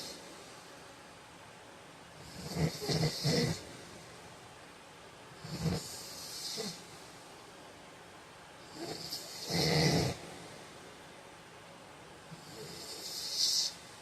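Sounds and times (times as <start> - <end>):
man snoring: 2.2 - 3.6, 5.4 - 6.8, 8.8 - 10.2, 12.4 - 13.8.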